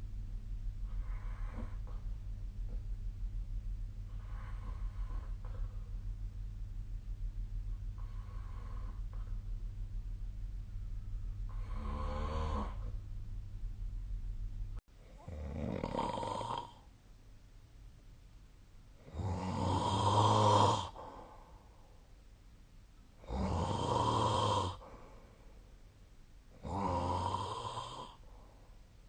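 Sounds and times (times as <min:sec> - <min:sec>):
quiet breathing: 0:00.7 - 0:02.8, 0:03.8 - 0:13.1, 0:19.0 - 0:22.3, 0:23.2 - 0:29.0
person snoring: 0:11.5 - 0:12.9, 0:15.1 - 0:16.9, 0:19.0 - 0:21.1, 0:23.2 - 0:25.0, 0:26.6 - 0:28.2.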